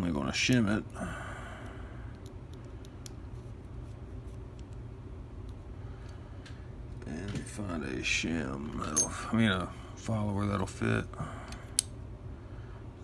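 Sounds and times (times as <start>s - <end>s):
steady low hum: 0.0s - 13.0s
clicks of metal lock parts: 8.8s - 9.2s.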